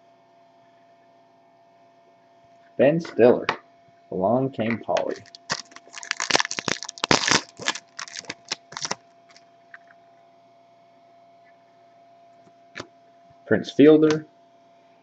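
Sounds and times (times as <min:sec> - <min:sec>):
wrapper crinkling and tearing: 0:05.0 - 0:09.9.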